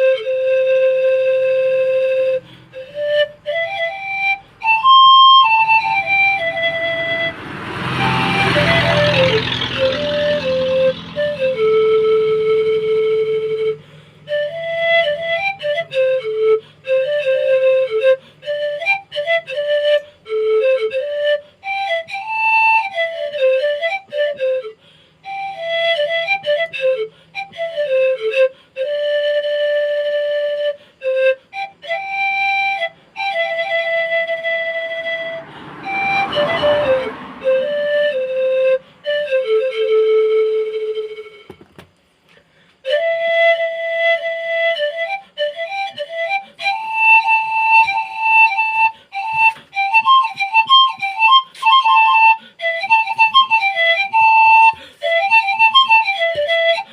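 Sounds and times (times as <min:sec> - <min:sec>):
bamboo panpipe melody: 0:00.0 - 0:56.9
breathy rush of air: 0:02.2 - 0:03.1, 0:13.6 - 0:14.3, 0:35.2 - 0:37.5, 0:42.0 - 0:42.9, 0:52.3 - 0:52.7, 0:54.7 - 0:55.2.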